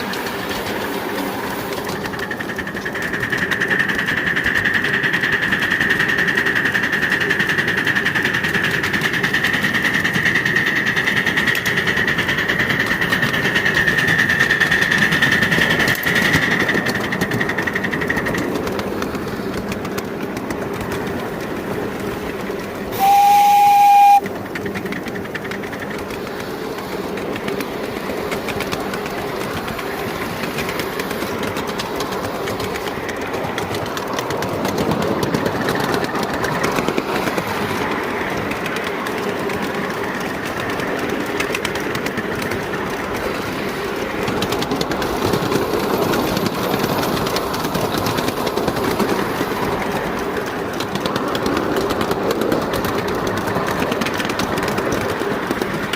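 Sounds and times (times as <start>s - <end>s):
steam locomotive running rattle: 0.0s - 55.9s
steam whistle blast: 22.9s - 24.3s.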